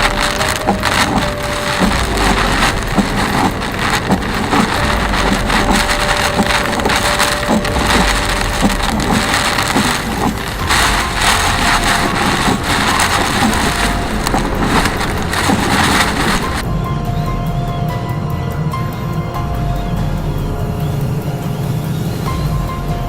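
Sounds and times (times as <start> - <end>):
hail pelting a car: 0.0 - 16.6.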